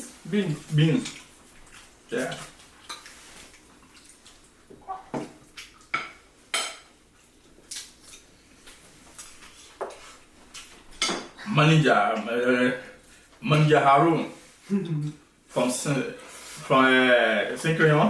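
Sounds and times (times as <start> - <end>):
person speaking: 0.0 - 1.2.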